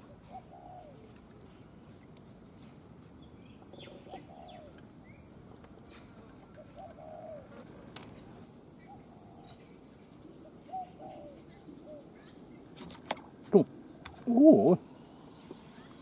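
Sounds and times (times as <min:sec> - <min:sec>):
dove cooing: 0:00.0 - 0:01.2, 0:03.7 - 0:04.8, 0:06.0 - 0:07.9, 0:08.8 - 0:09.6, 0:10.2 - 0:12.3, 0:13.5 - 0:14.9
small birds chirping: 0:00.0 - 0:16.0.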